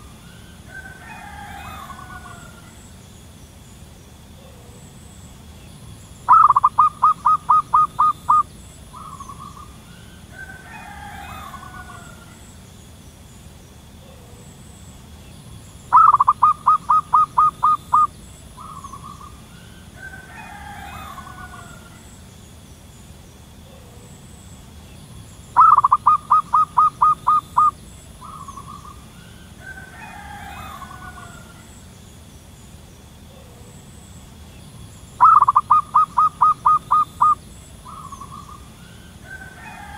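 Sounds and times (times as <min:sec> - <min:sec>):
dove cooing: 0:00.0 - 0:03.0, 0:06.2 - 0:12.6, 0:15.9 - 0:22.2, 0:25.6 - 0:31.8, 0:35.2 - 0:39.9
faint complex bird call: 0:00.0 - 0:39.9.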